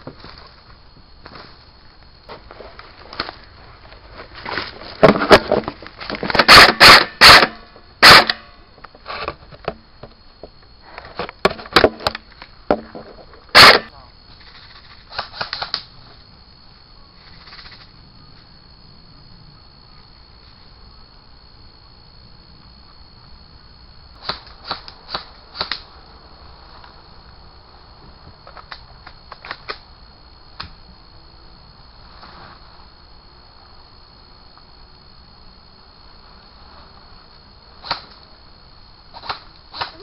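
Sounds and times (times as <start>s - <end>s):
airsoft guns firing sharp pops: 6.2s - 8.5s, 13.5s - 15.9s, 24.2s - 25.9s, 28.5s - 29.8s, 37.8s - 38.2s, 39.2s - 40.0s.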